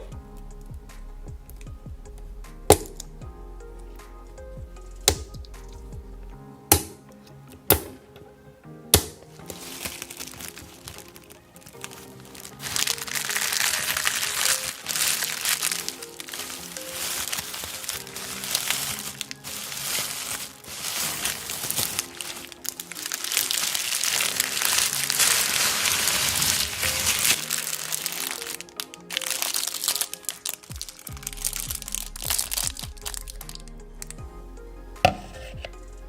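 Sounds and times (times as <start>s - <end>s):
background music: 0.0s - 36.0s
crinkling and crunching: 8.9s - 34.2s.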